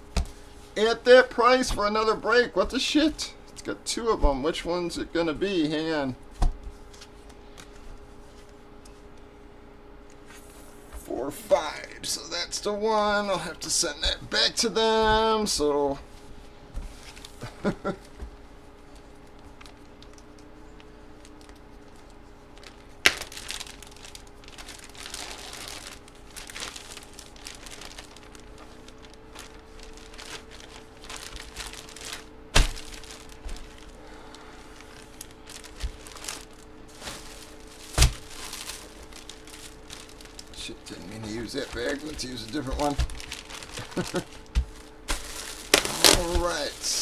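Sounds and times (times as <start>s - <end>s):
plastic packaging crinkling: 19.2s - 47.0s.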